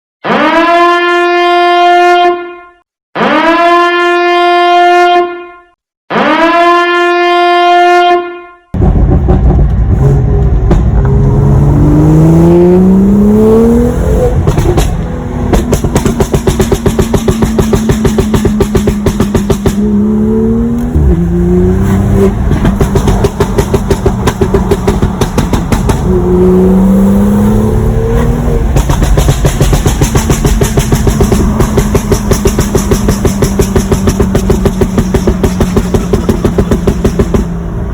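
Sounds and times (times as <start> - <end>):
horn blasts: 0.3 - 8.8
car engine revving: 8.8 - 37.9
exhaust pops crackling: 14.3 - 20.0, 22.3 - 26.2, 28.6 - 37.6.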